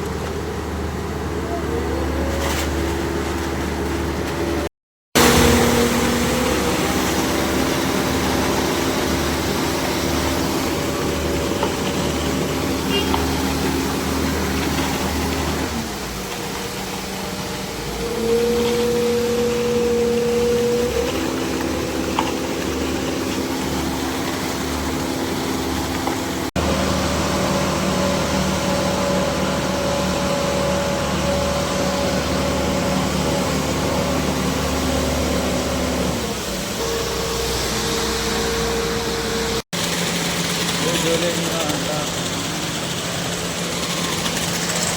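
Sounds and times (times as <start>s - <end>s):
diesel engine running: 0.0s - 44.9s.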